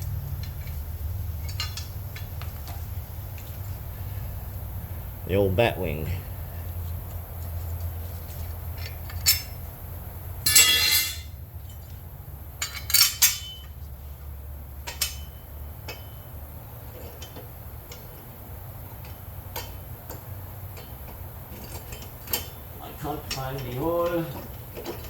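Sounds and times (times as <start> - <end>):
metal tools clinking: 1.4 - 2.3, 8.7 - 9.7, 10.4 - 11.9, 12.6 - 13.8, 14.8 - 16.2
ringing metal clatter: 8.7 - 9.7, 10.4 - 11.9, 12.6 - 13.8, 14.8 - 16.3.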